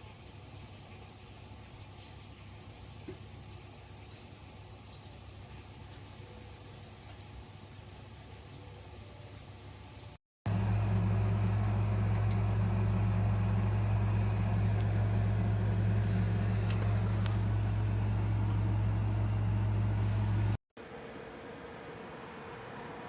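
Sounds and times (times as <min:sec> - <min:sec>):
steady low hum: 0:10.5 - 0:23.0.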